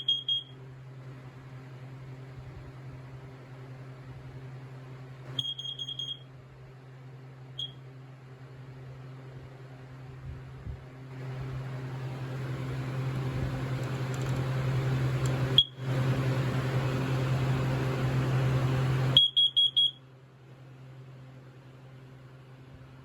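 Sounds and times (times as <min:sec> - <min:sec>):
smoke alarm beeping: 0:00.0 - 0:00.6, 0:05.4 - 0:06.3, 0:07.5 - 0:07.8, 0:15.5 - 0:15.8, 0:19.1 - 0:20.0
steady hum with rushing noise: 0:06.4 - 0:19.2.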